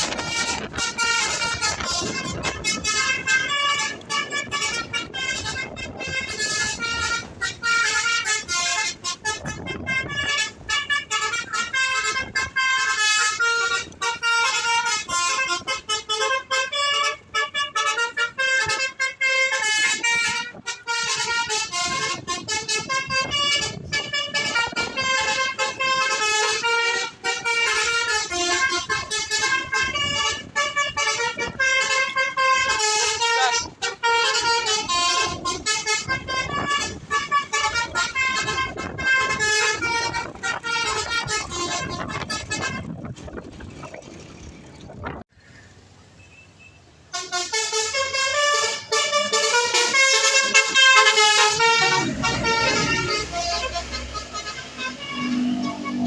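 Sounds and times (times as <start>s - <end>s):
multi-tone air horn melody: 0.0s - 43.4s, 46.3s - 56.0s.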